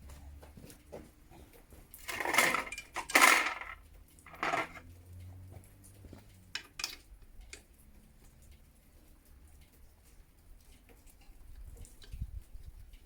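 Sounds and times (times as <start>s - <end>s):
metal tools clattering and scraping: 2.0s - 4.8s.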